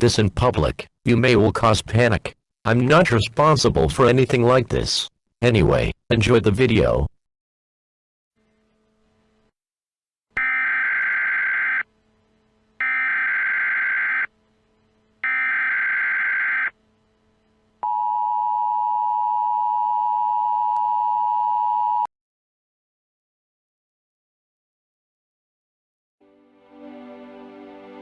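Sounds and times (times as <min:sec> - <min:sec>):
warbling digital data bursts: 0:12.8 - 0:14.3, 0:15.2 - 0:16.7.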